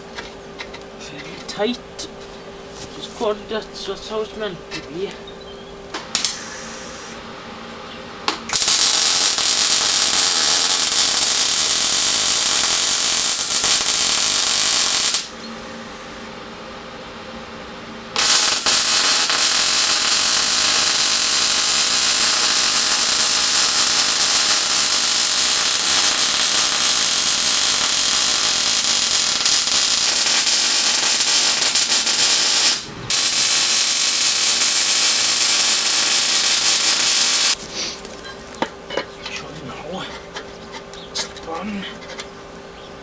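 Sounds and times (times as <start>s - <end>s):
welding arc crackling: 6.1s - 7.2s, 8.4s - 15.4s, 18.1s - 38.2s.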